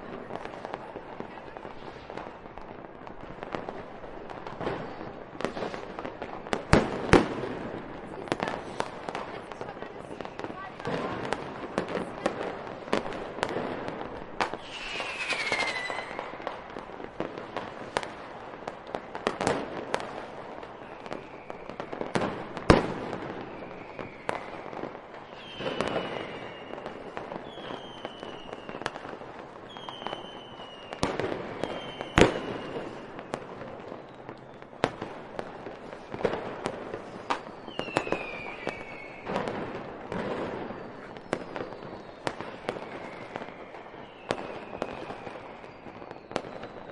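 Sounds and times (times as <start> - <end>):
fireworks bangs and crackling pops: 0.0 - 46.9
falling whistles: 14.6 - 16.4, 25.3 - 26.8, 31.6 - 32.8, 37.6 - 39.3.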